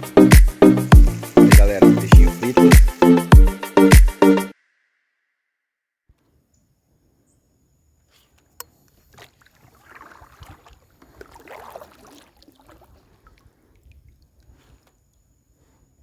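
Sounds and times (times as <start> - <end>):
water splashing around kayak: 9.0 - 14.8.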